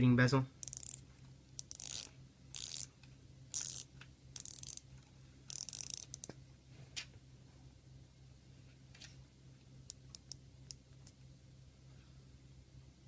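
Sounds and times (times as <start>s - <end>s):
watch bezel ratcheting clicks: 0.6s - 1.0s, 1.6s - 2.9s, 3.5s - 4.9s, 5.5s - 6.3s, 9.9s - 10.8s.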